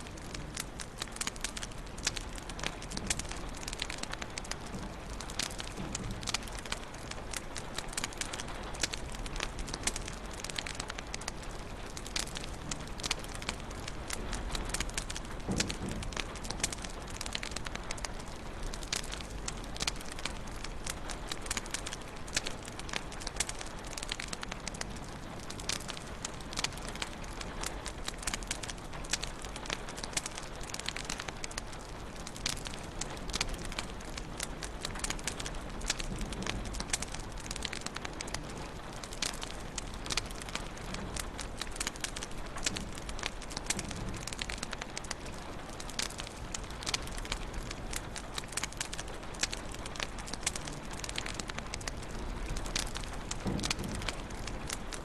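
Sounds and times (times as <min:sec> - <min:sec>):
wood fire crackling: 0:00.0 - 0:55.0.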